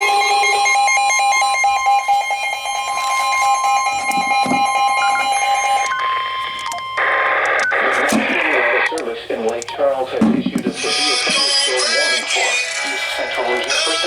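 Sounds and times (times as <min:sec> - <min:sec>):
buzzy two-tone alert alarm: 0:00.0 - 0:09.0
person reading a warning: 0:01.5 - 0:14.0.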